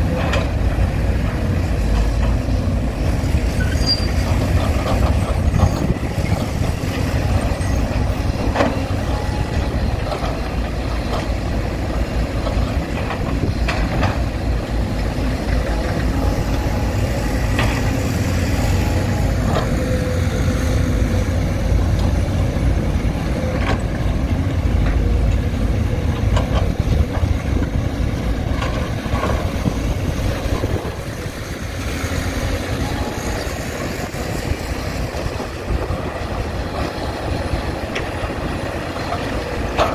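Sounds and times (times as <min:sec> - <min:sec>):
heavy diesel machinery running: 0:00.0 - 0:39.9.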